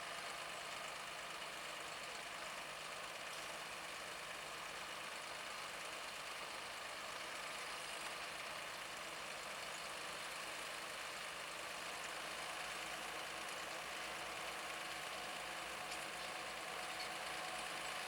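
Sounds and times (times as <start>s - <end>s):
tractor and harvester droning: 11.7s - 18.0s.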